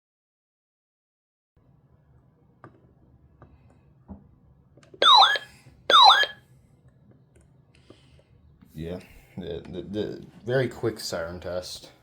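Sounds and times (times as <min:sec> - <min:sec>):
electronic siren bursts: 0:05.0 - 0:06.4.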